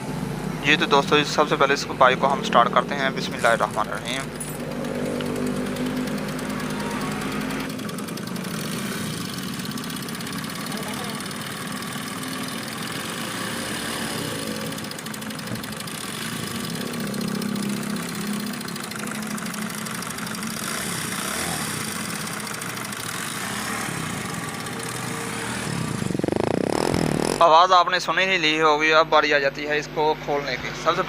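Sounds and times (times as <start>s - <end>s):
motorcycle engine idling: 0.0s - 27.4s
timing chain rattle: 3.3s - 8.8s, 14.2s - 20.4s.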